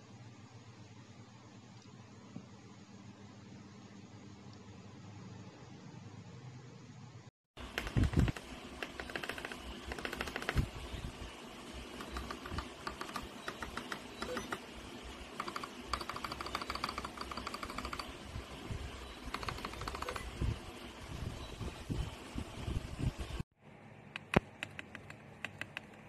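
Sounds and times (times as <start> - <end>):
mechanical keyboard typing: 7.6 - 10.7, 11.9 - 14.6, 15.4 - 18.2, 19.2 - 20.4, 24.2 - 26.0.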